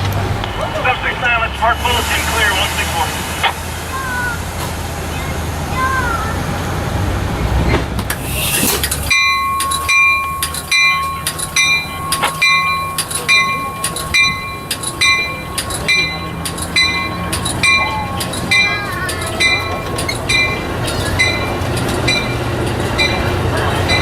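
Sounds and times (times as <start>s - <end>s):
train rumbling: 0.0s - 24.0s
steady high tone: 8.2s - 24.0s
bell ringing steadily: 8.9s - 24.0s.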